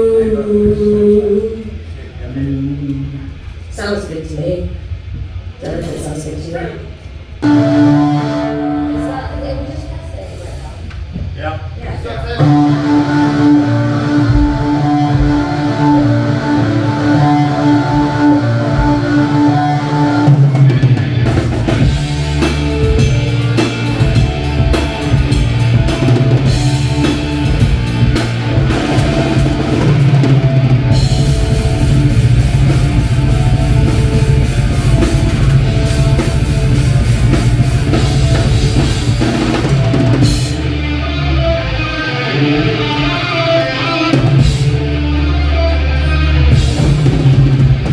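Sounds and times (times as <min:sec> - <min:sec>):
live rock band playing: 0:12.4 - 0:47.9.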